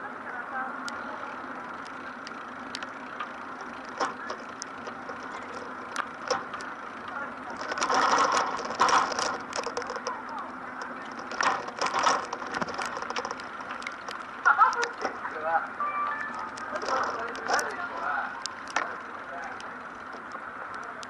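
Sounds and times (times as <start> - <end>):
murmur of crowd voices: 0.0 - 1.8.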